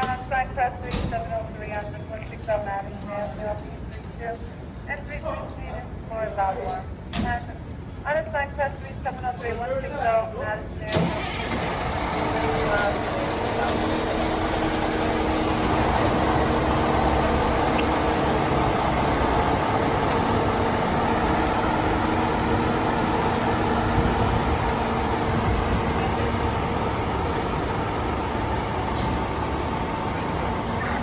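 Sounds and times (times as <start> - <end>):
diesel engine running: 10.9 - 31.0
road noise: 10.9 - 31.0.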